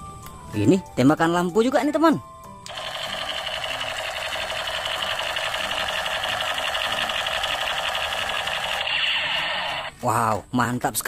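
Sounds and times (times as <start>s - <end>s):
toy gun electronic rattle: 2.7s - 10.0s.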